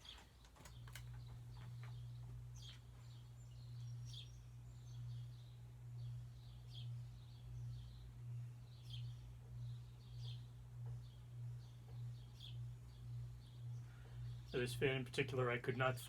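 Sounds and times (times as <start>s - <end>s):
birds chirping: 0.0s - 16.0s
ceiling fan motor humming: 0.0s - 16.0s.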